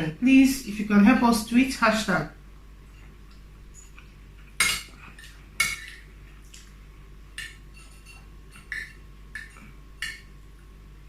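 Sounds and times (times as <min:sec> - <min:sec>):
cutlery clinking on a plate: 0:04.6 - 0:06.1, 0:07.4 - 0:10.3.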